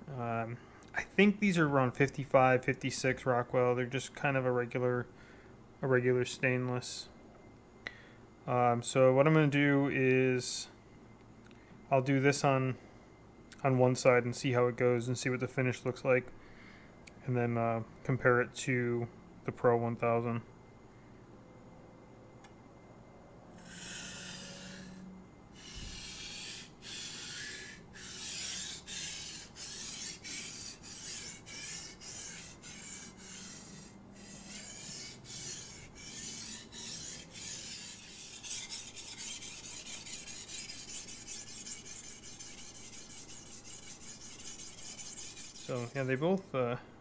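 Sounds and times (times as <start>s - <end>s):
knife scraping on whetstone: 23.6s - 25.0s, 25.6s - 46.3s.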